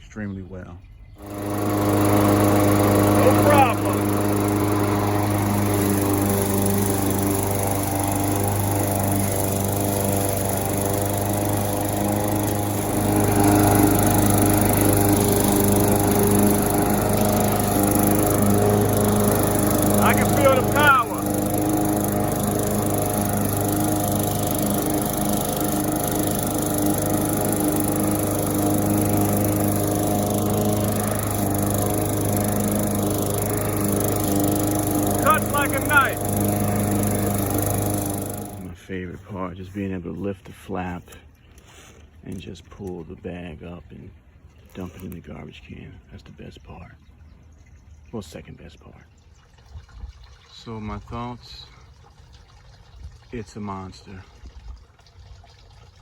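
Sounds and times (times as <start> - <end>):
lawn mower mowing grass: 1.2 - 38.8.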